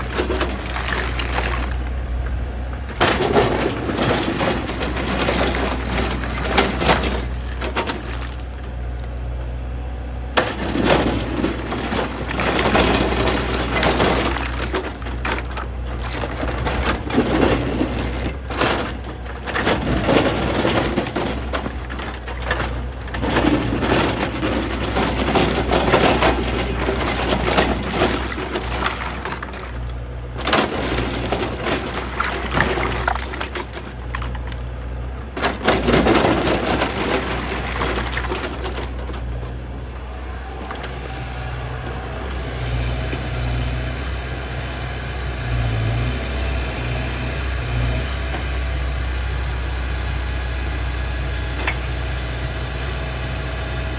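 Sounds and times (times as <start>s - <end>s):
bucket scraping soil: 0.0s - 9.3s
soil and stones clattering: 0.0s - 48.6s, 51.1s - 53.0s
excavator engine humming: 0.0s - 53.9s.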